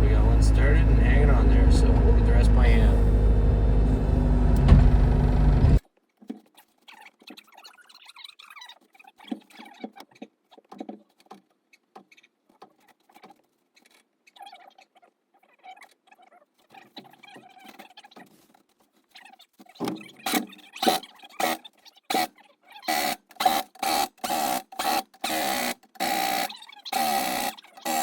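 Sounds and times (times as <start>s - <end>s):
tractor engine running: 0.0s - 5.8s
lug nuts clicking and squeaking: 19.4s - 28.0s.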